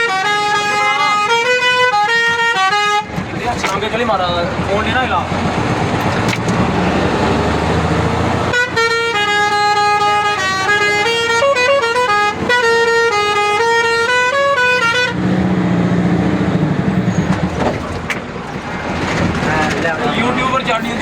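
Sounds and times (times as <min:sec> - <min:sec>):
bus musical horn: 0:00.0 - 0:03.2, 0:08.2 - 0:15.5
vehicle noise: 0:00.0 - 0:21.0.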